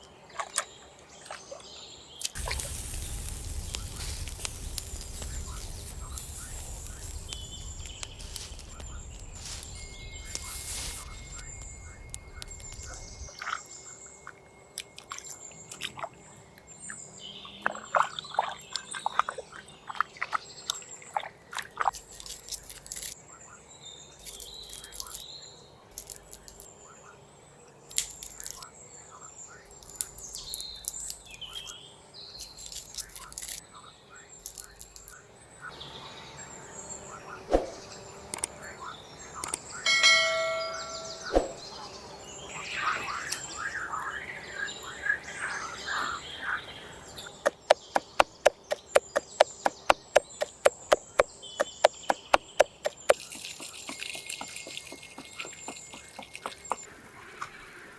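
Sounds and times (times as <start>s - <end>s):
birds chirping: 0.0s - 57.9s
sharp clicks and knocks: 47.5s - 56.9s.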